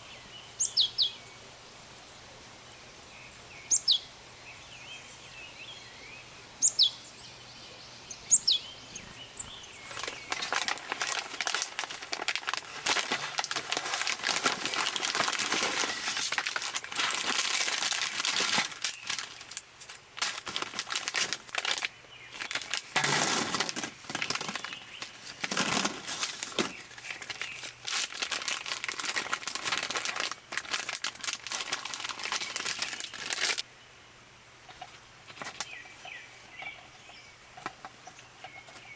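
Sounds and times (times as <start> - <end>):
bird chirps: 0.0 - 1.4, 3.2 - 10.6
packaging crinkling and rustling: 9.8 - 33.6.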